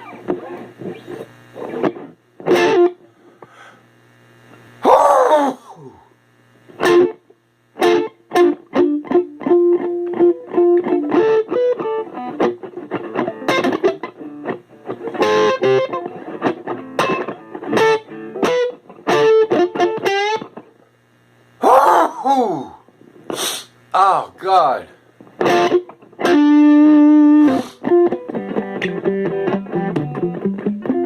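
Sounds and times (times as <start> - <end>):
guitar picking a melody: 0.0 - 3.1, 6.8 - 20.8, 25.2 - 31.0.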